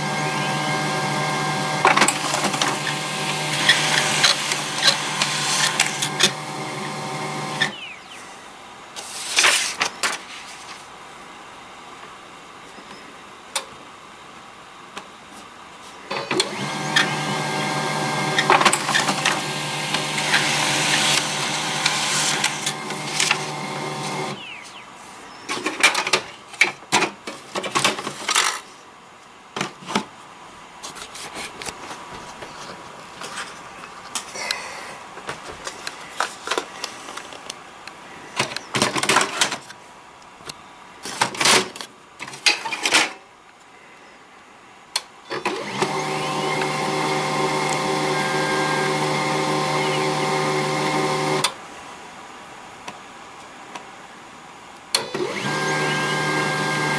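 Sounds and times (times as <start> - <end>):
laser printer running: 0.0 - 8.0, 16.1 - 24.5, 45.4 - 51.5, 55.0 - 56.9.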